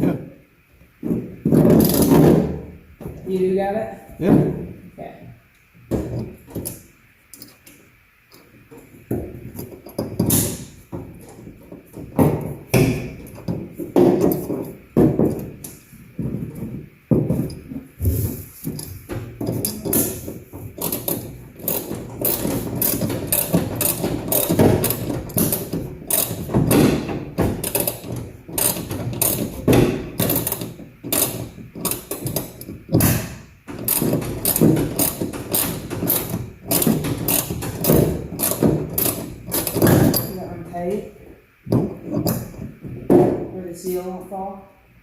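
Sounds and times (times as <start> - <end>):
ratchet wrench clicking: 20.8 - 26.5, 27.6 - 29.6, 30.2 - 33.1, 33.8 - 40.3.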